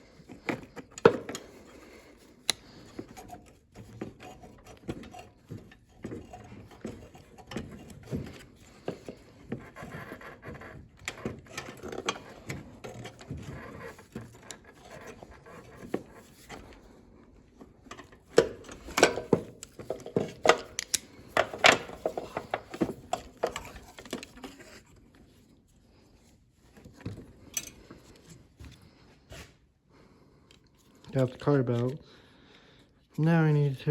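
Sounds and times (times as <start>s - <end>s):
hand tools and metal parts rattling: 0.1s - 16.8s, 17.8s - 24.9s, 26.8s - 28.4s.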